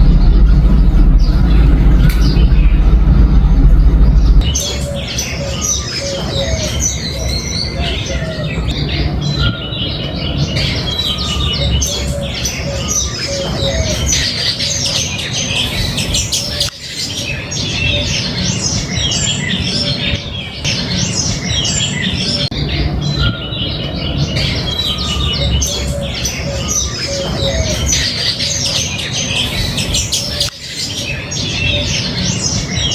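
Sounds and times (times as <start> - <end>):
steady low rumble: 0.0 - 16.6
doves cooing: 0.0 - 32.9
small birds chirping: 0.0 - 32.9.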